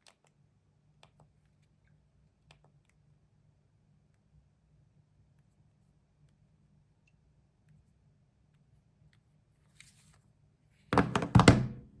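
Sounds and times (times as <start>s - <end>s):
loud knocks and clicks: 11.0s - 12.0s.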